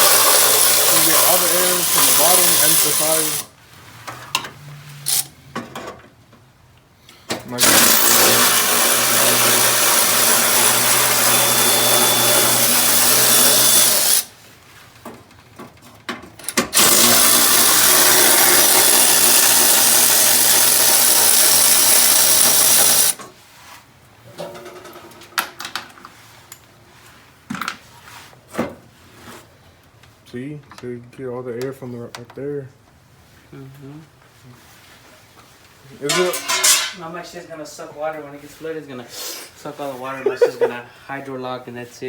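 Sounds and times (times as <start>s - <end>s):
electric drill running: 0.0s - 3.5s, 7.6s - 14.3s, 16.8s - 23.2s.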